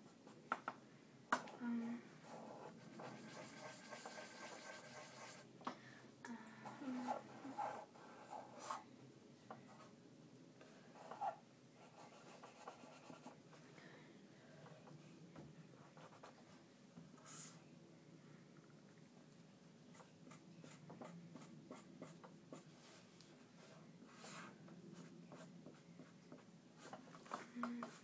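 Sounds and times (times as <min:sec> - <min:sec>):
pencil scratching on paper: 0:02.2 - 0:05.4, 0:07.0 - 0:08.8, 0:11.0 - 0:13.4, 0:19.9 - 0:23.0, 0:23.6 - 0:28.0.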